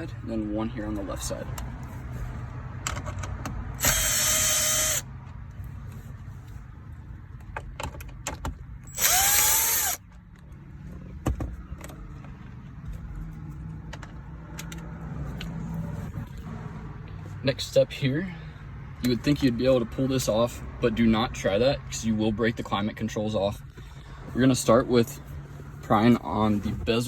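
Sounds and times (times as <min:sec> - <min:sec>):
impact driver whirring: 0:03.8 - 0:05.1, 0:08.9 - 0:10.0.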